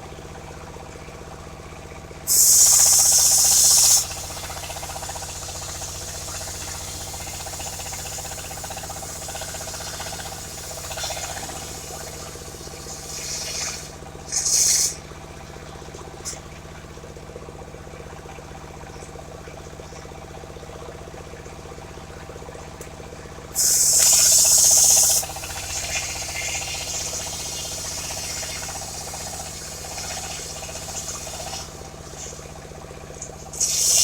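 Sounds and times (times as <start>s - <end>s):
circular sawmill running: 0.0s - 19.9s, 20.6s - 34.0s
loud hiss: 2.3s - 15.0s, 23.6s - 32.6s, 33.6s - 34.0s.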